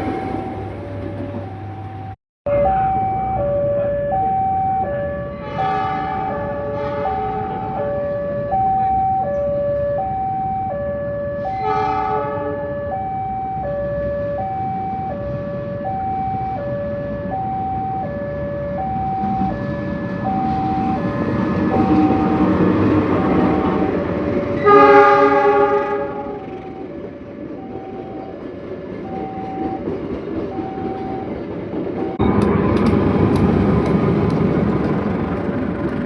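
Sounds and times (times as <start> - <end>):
train rumble: 0.0 - 36.0
level crossing alarm two-tone: 1.4 - 11.8, 12.5 - 22.3, 27.6 - 28.4, 29.0 - 29.9, 30.5 - 31.4
locomotive horn blast: 5.2 - 8.1, 11.4 - 12.8, 21.8 - 26.8.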